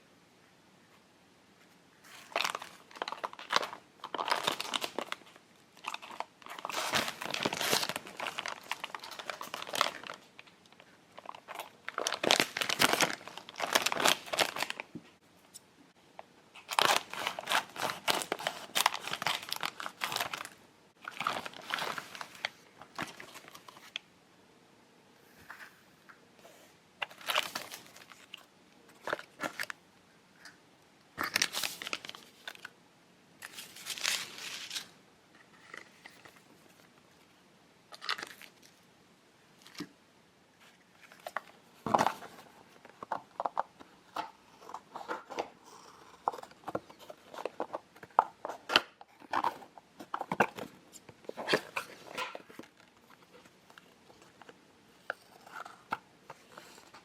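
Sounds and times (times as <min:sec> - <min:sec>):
candy packets crinkling and tearing: 0:02.2 - 0:14.9, 0:16.6 - 0:22.4, 0:37.9 - 0:38.8.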